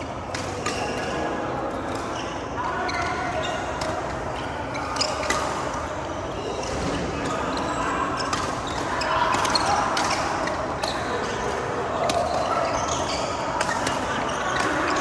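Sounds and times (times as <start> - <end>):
background murmur: 0.0 - 15.0
racket hitting shuttlecock: 11.5 - 12.6.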